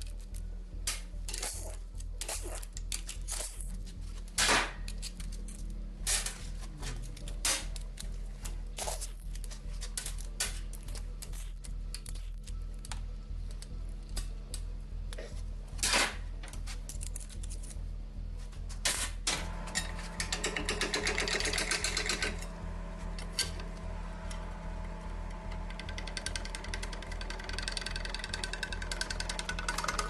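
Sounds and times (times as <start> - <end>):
background music with low pulse: 0.0 - 30.0
metallic tool clicks and clatter: 4.8 - 6.4, 16.5 - 17.8.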